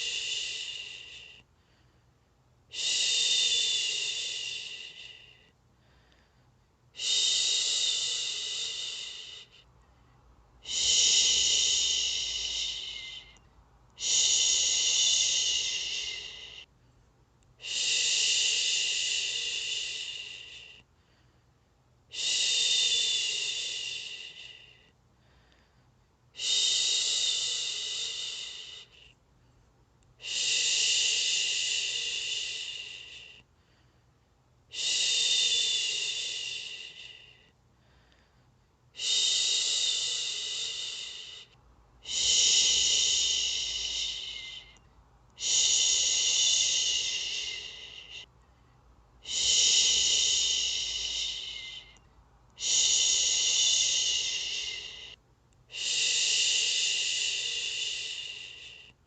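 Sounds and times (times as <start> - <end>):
person shushing: 10.6 - 13.4, 14.0 - 16.6, 39.0 - 44.8, 45.4 - 48.3, 49.2 - 52.0, 52.6 - 58.9.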